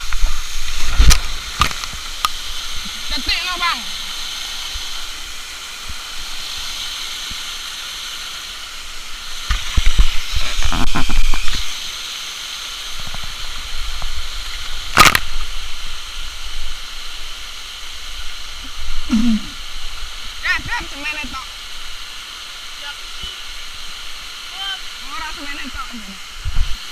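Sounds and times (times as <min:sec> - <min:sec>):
waterfall rushing hiss: 0:00.0 - 0:26.9
sharp click: 0:14.9 - 0:15.3.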